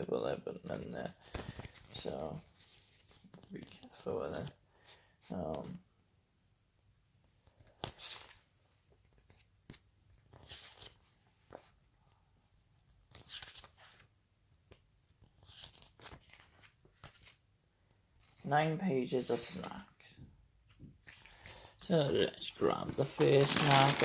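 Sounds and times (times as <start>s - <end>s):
paper pages turning: 0.6s - 4.5s, 7.5s - 11.8s, 12.7s - 14.1s, 14.7s - 17.4s, 18.2s - 18.5s, 21.0s - 24.0s.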